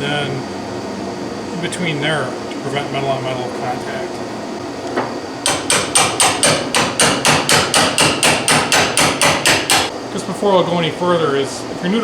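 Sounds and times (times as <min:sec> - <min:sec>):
hammer striking steel hinge: 0:05.4 - 0:09.9.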